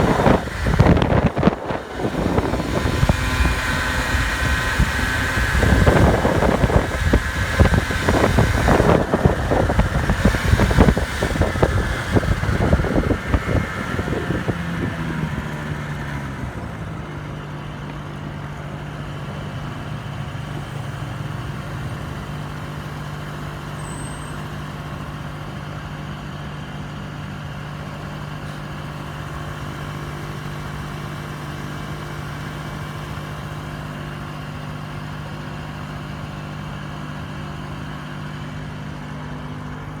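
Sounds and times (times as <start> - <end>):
scooter engines running: 0.0 - 40.0.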